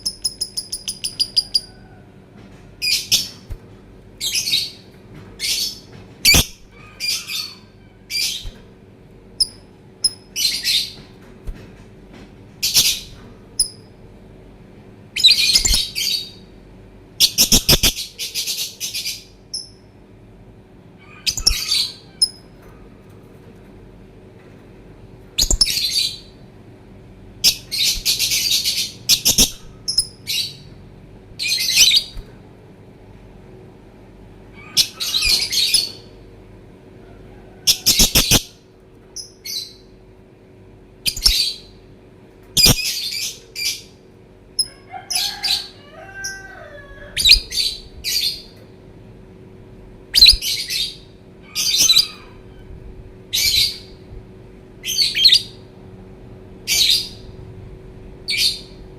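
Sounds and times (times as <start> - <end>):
bird harsh high chirping: 0.0 - 1.7, 17.2 - 18.1, 25.4 - 26.2, 27.5 - 30.7.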